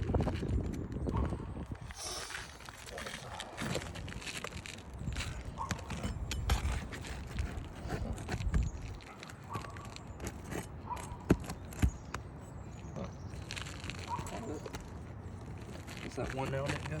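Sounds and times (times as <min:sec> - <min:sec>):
roof shingles being scraped: 0:01.9 - 0:12.0.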